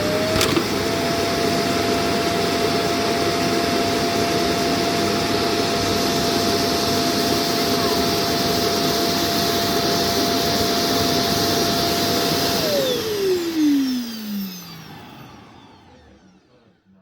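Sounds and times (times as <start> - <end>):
vacuum suction motor winding down: 0.0 - 1.0, 12.5 - 16.8.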